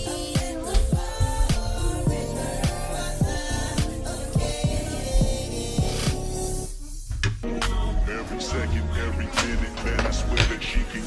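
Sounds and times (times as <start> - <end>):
deep sliding bass hits: 0.0 - 7.8
background music with steady beat: 0.0 - 11.0.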